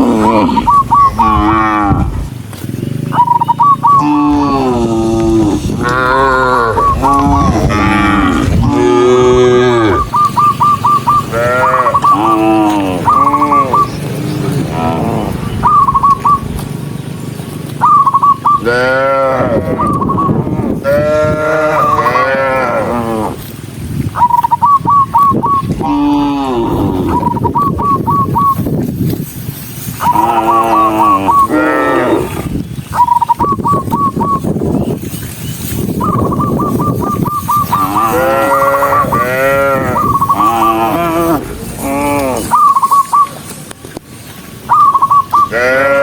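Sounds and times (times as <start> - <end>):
cattle mooing: 0.0 - 2.4, 3.1 - 16.2, 18.6 - 23.6, 25.6 - 27.6, 30.0 - 32.6, 37.5 - 42.8, 45.4 - 46.0
short high calls: 5.7 - 7.5, 9.2 - 14.0, 14.8 - 16.5, 24.2 - 28.7, 29.9 - 31.9, 35.8 - 43.6, 44.6 - 46.0.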